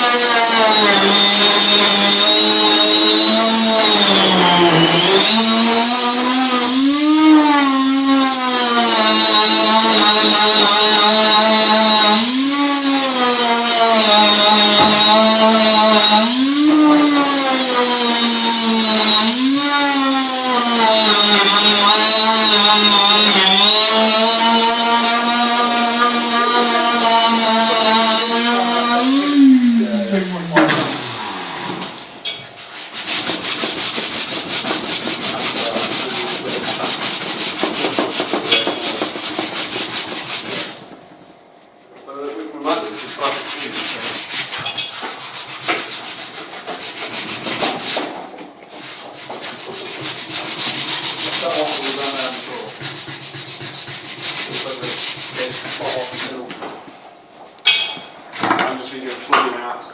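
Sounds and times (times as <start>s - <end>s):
power tool motor shaping wood: 0.0s - 32.0s, 49.5s - 56.4s
wood sanding strokes: 0.0s - 41.4s, 42.1s - 57.6s.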